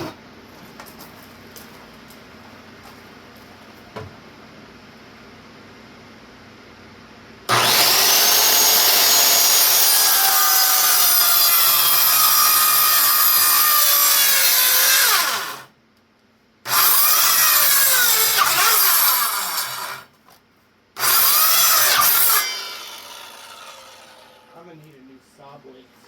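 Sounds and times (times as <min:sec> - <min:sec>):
electric saw cutting wood: 0:07.5 - 0:15.7, 0:16.7 - 0:20.1, 0:21.0 - 0:24.6.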